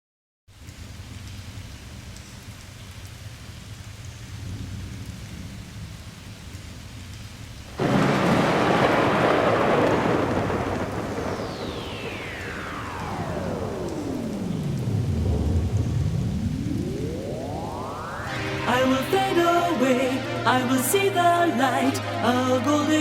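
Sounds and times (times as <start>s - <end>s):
steady rain: 0.5s - 23.0s
low rumble: 4.3s - 7.0s, 7.8s - 19.6s
loud thunderclap: 7.8s - 18.3s
tone gliding down in pitch: 11.2s - 20.2s.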